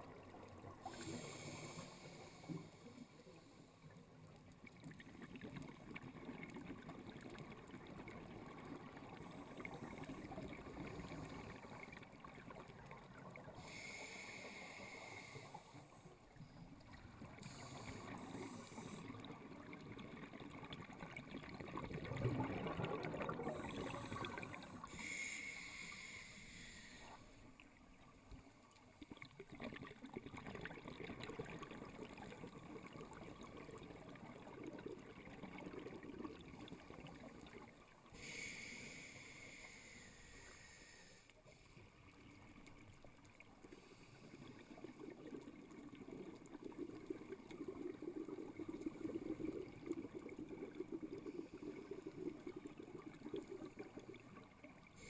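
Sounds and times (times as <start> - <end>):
hissing regulator inhalations: 0.8 - 3.6, 13.6 - 16.1, 17.4 - 19.2, 23.4 - 27.4, 38.2 - 41.8
gurgle of exhaled bubbles: 16.8 - 25.0, 29.0 - 37.9, 44.4 - 55.0.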